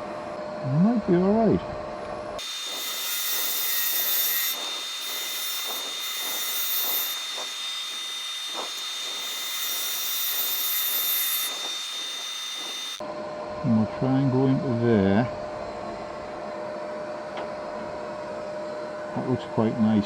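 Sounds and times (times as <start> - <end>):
high-pitched lathe whine: 0.0 - 20.0
wood lathe tool cutting hiss: 2.4 - 13.0.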